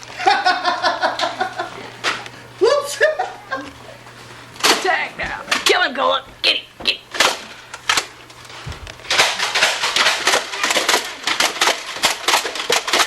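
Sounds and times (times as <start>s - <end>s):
toy gun firing clicks: 9.1s - 13.0s.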